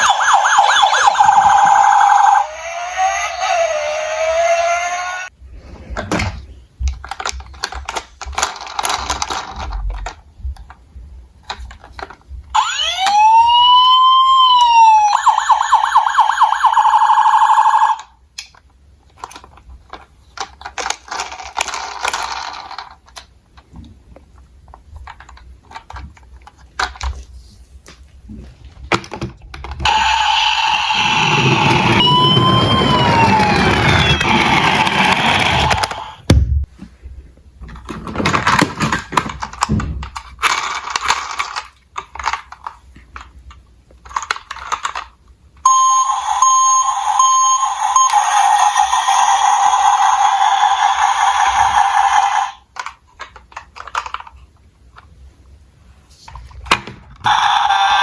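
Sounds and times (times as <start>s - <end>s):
electronic siren wailing: 0.0s - 5.3s, 12.6s - 18.0s, 29.9s - 36.2s, 45.7s - 52.6s, 57.3s - 58.0s.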